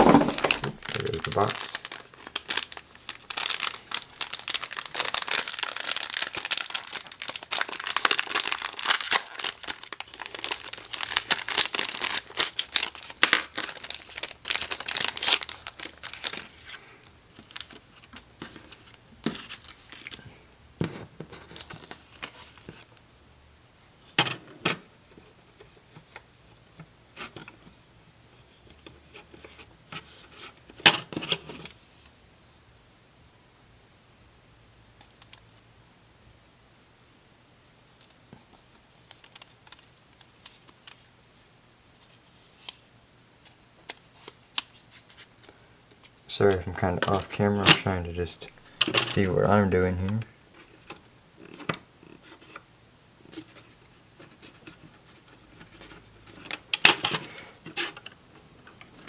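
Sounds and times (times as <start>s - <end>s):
handling rustles: 0.0s - 2.6s
plastic packaging crinkling and tearing: 0.0s - 20.2s, 21.4s - 22.7s, 46.3s - 50.3s.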